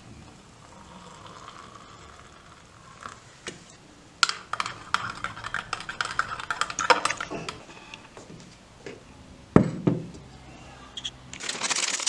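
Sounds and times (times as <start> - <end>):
keyboard typing: 4.2 - 8.3.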